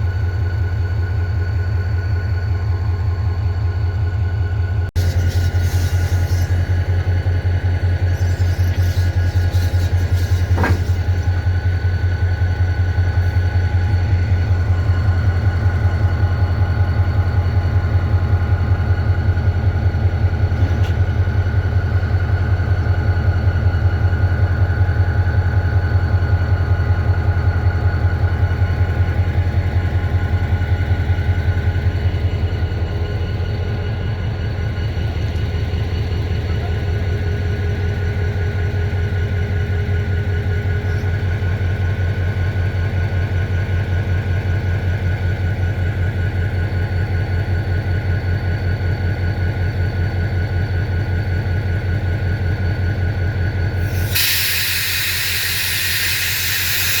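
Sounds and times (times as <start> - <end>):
diesel locomotive engine idling: 0.0 - 57.0.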